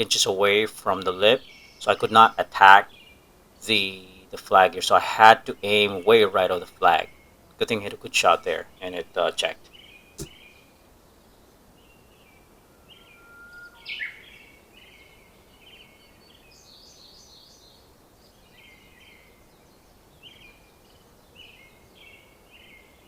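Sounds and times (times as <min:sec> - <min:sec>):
faint outdoor hush: 0:00.0 - 0:15.6
birds chirping: 0:00.0 - 0:22.9
thin steady whistle: 0:12.6 - 0:14.6.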